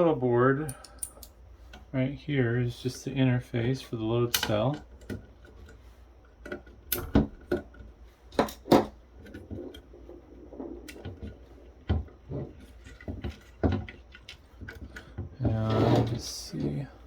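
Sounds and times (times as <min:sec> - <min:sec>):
plastic parts clicking and knocking: 0:06.4 - 0:15.6.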